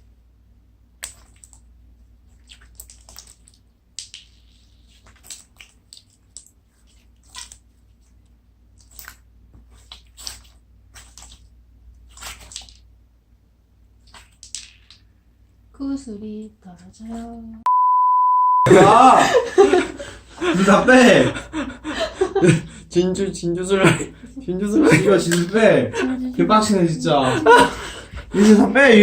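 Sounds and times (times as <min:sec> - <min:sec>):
wet slime squelching: 0:00.9 - 0:13.0, 0:13.8 - 0:15.4, 0:23.8 - 0:28.7.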